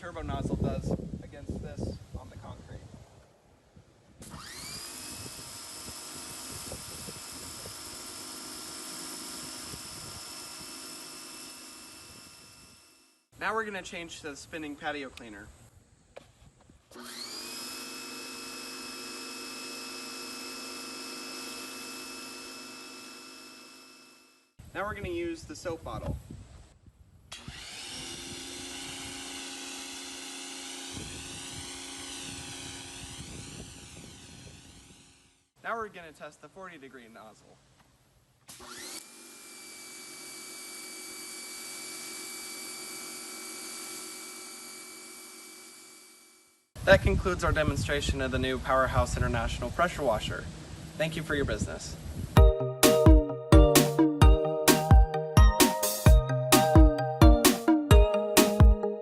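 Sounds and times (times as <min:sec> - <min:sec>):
pressure washer motor whine: 0:04.2 - 0:13.0, 0:17.0 - 0:24.5, 0:27.3 - 0:35.2, 0:38.5 - 0:46.4.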